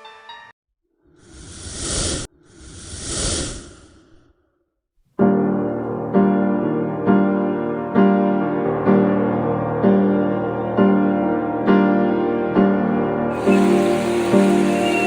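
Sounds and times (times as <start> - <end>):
piano chords: 5.2 - 15.0
swell of noise: 13.3 - 15.0.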